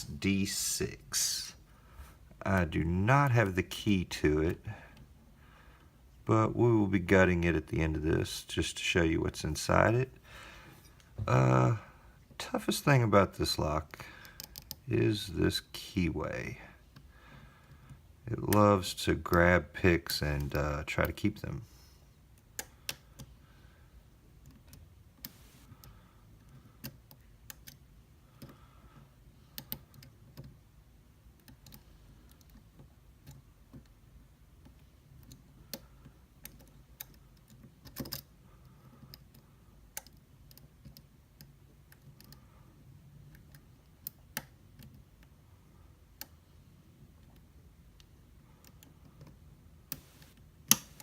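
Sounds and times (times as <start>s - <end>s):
lock picks clicking in lock: 34.7s - 38.3s.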